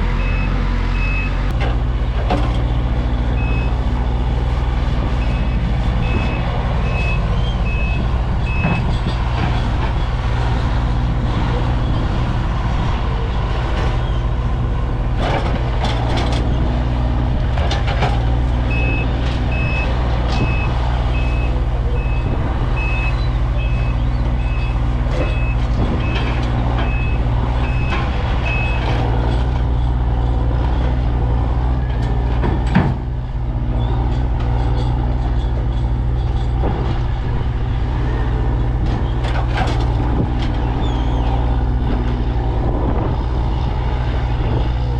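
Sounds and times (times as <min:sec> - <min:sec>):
diesel engine running: 0:00.0 - 0:44.9
reversing alarm beeps: 0:00.2 - 0:01.4, 0:05.2 - 0:08.9, 0:18.7 - 0:26.3.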